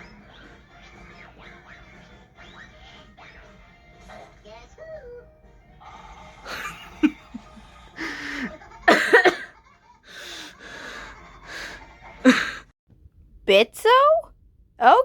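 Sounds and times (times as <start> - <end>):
squeaky voiced sounds: 0.0 - 5.3
person gasping and panting: 5.9 - 7.1, 8.0 - 9.4, 10.1 - 12.6
person laughing: 6.5 - 12.6.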